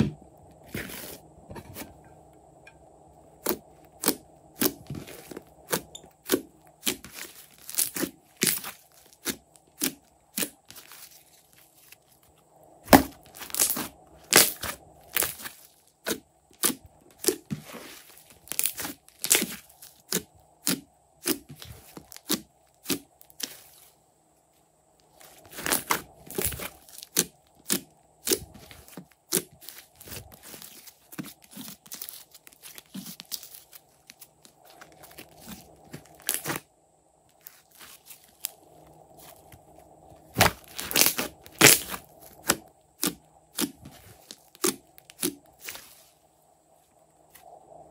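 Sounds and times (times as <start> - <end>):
slime crackling and popping: 12.9 - 15.5, 18.4 - 23.5, 40.3 - 45.3.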